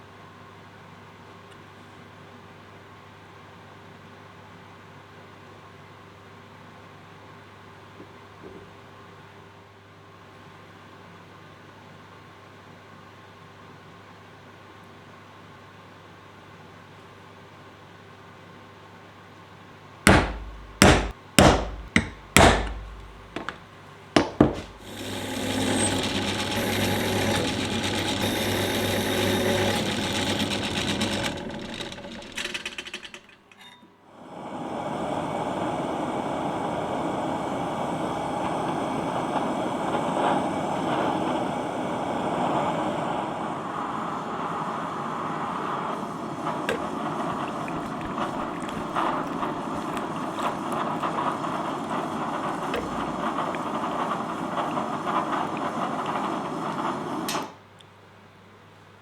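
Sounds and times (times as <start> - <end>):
hammer blows on steel: 20.1 - 23.6
power tool humming: 20.1 - 23.6, 24.2 - 32.4, 46.7 - 54.0
rushing machine noise: 20.1 - 23.6, 24.2 - 32.9, 46.5 - 57.2.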